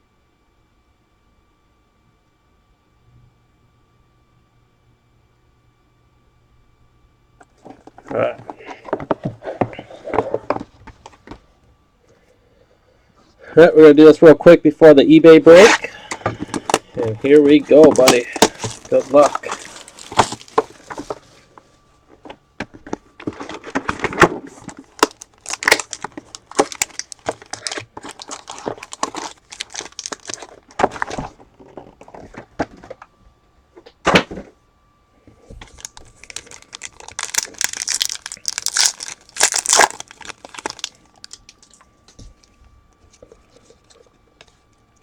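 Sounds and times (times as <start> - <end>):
wrappers crinkling and tearing: 15.6 - 21.4, 23.2 - 31.9, 35.6 - 42.5
cards rustling and clicking: 15.6 - 32.5, 35.6 - 44.8.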